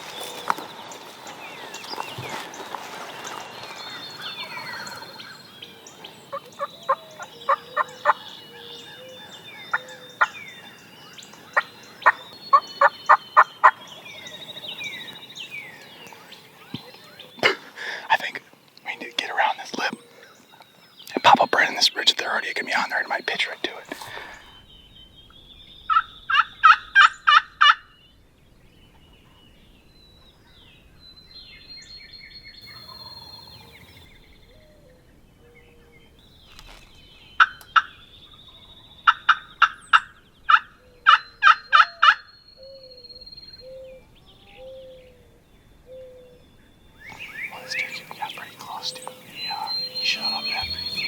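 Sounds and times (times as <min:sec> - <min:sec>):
faint songbird notes: 0:00.0 - 0:51.0
wild turkey calling: 0:06.0 - 0:10.4, 0:32.7 - 0:34.1, 0:47.0 - 0:51.0.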